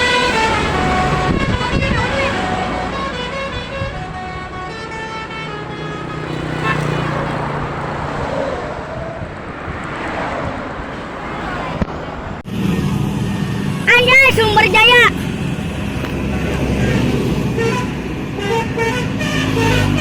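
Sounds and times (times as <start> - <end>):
musical air horn melody: 0.0 - 7.5, 16.4 - 20.0
bus engine and tyre noise: 0.0 - 20.0.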